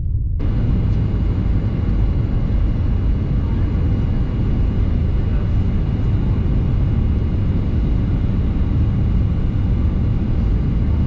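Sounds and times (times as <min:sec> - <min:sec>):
vehicle cabin rumble: 0:00.0 - 0:11.0.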